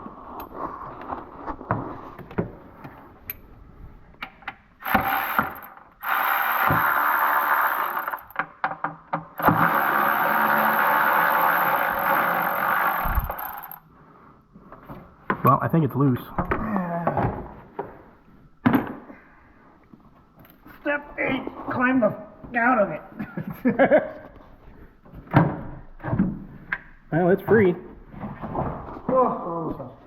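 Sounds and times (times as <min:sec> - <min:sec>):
power tool running: 0:04.8 - 0:08.4, 0:09.4 - 0:13.8.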